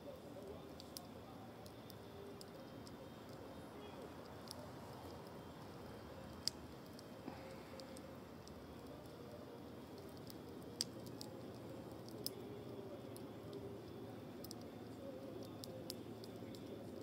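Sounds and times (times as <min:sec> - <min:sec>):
low steady fire hiss: 0:00.0 - 0:17.0
wood fire crackling and popping: 0:04.1 - 0:17.0.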